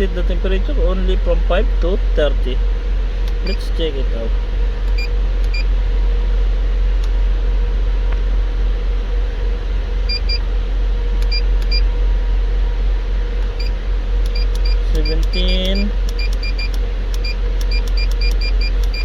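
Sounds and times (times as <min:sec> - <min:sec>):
truck engine hum: 0:00.0 - 0:19.0
keypad beeps: 0:14.3 - 0:19.0.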